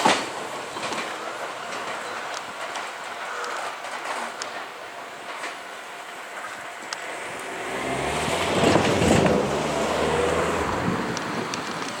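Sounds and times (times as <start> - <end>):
vehicle passing with low hum: 7.0 - 11.6.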